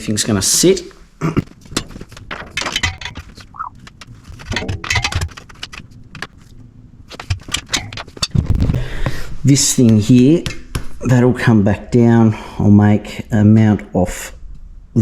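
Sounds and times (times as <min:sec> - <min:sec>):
metal parts clinking and knocking: 0:01.6 - 0:06.5, 0:07.1 - 0:08.7.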